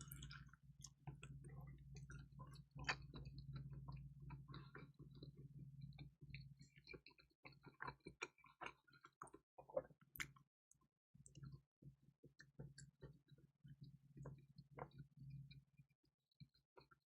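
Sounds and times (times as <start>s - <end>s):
chewing with wet mouth clicks: 0.0s - 11.6s.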